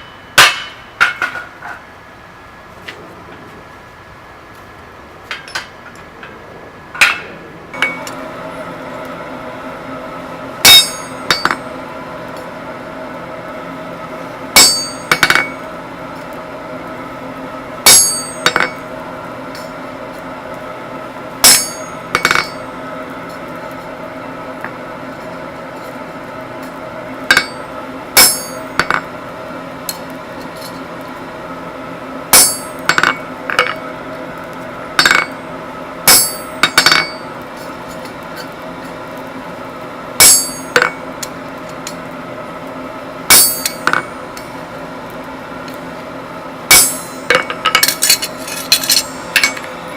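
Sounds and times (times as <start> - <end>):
hammer striking hot steel on anvil: 0.0 - 1.8, 7.0 - 8.2, 10.6 - 11.7, 14.5 - 16.4, 17.8 - 18.9, 21.4 - 23.8, 26.6 - 29.1, 32.3 - 33.9, 34.9 - 35.4, 36.0 - 39.0, 40.2 - 42.1, 43.3 - 44.6, 46.7 - 49.9
steady hum: 0.0 - 49.9.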